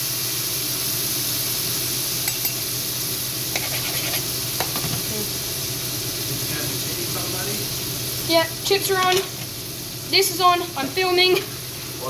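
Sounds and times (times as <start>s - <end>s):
steak sizzling in a frying pan: 0.0s - 12.0s
utensil scraping a pan: 3.5s - 5.0s.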